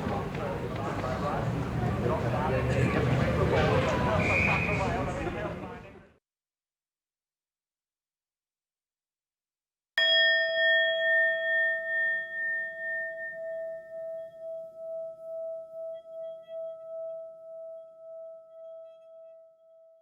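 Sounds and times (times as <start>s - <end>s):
bell ringing: 10.0s - 15.7s.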